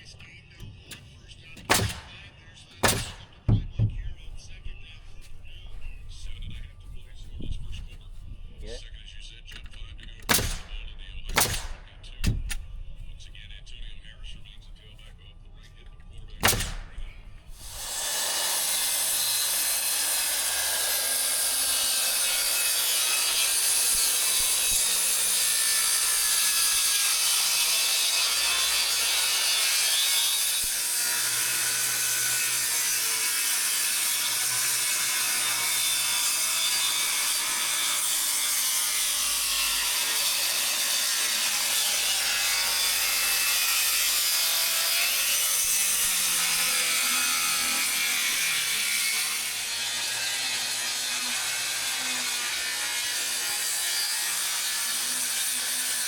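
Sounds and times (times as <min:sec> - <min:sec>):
dense hissy carpentry noise: 0:16.4 - 0:29.2.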